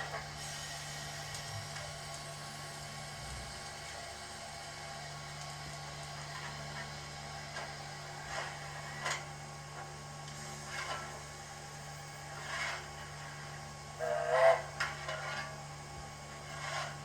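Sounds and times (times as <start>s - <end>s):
hissing steam puffs: 0.1s - 4.8s.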